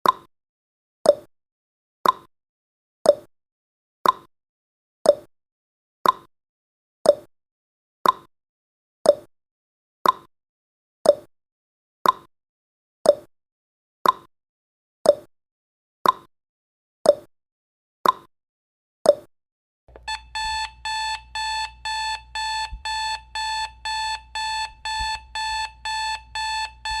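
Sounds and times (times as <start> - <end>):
clock ticking: 19.9 - 27.0
rapid electronic alarm beeping: 20.0 - 27.0.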